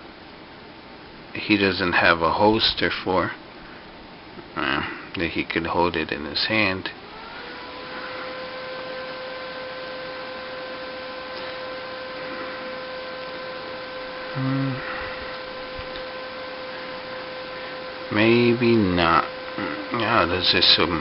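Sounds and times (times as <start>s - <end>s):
constant hiss: 0.0s - 7.0s, 9.0s - 21.0s
steady electrical whine: 0.0s - 21.0s
person humming briefly: 4.5s - 5.0s, 14.3s - 15.4s, 19.6s - 20.0s.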